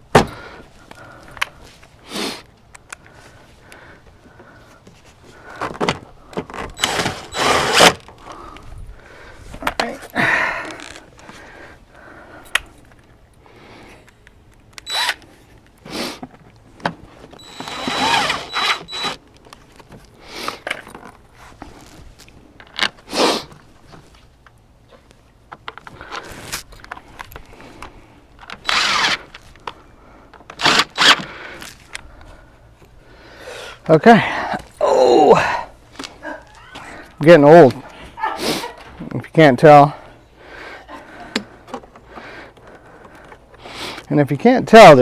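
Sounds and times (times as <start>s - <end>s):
handling knocks: 0.1s - 0.4s
cordless drill driving screws: 6.8s - 8.1s, 14.7s - 15.2s, 17.4s - 19.2s, 28.5s - 29.4s, 30.5s - 31.3s.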